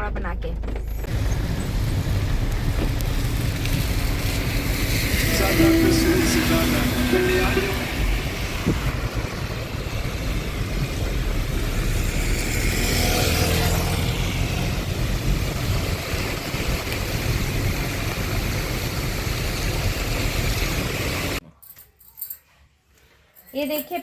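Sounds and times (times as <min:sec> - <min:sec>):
vehicle and road rumble: 0:00.0 - 0:21.4
faint pitched tone: 0:05.1 - 0:09.0.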